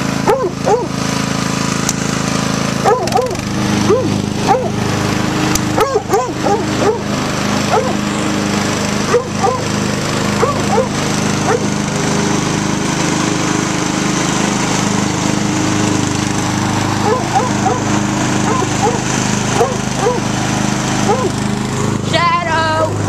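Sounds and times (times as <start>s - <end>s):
lawn mower engine running: 0.0s - 23.0s
dog barking: 0.3s - 0.9s, 2.8s - 4.7s, 5.8s - 7.0s, 7.7s - 8.0s, 9.1s - 9.6s, 10.4s - 10.9s, 11.5s - 11.7s, 17.0s - 17.8s, 18.5s - 19.0s, 19.6s - 20.2s, 21.1s - 21.4s.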